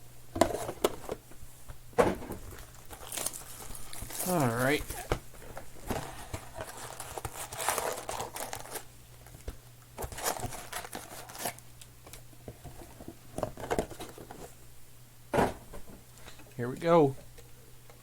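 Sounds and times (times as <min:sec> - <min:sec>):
wrappers crinkling and tearing: 0:02.5 - 0:09.4, 0:10.0 - 0:11.6.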